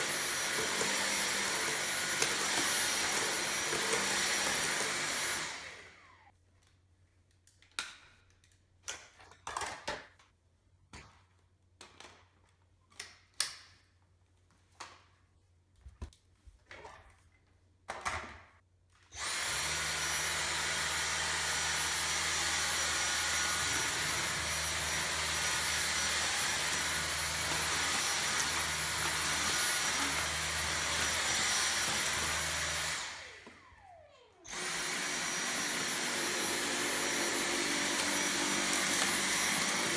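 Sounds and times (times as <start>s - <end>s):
vacuum cleaner motor whining: 0.0s - 6.3s, 19.2s - 39.9s.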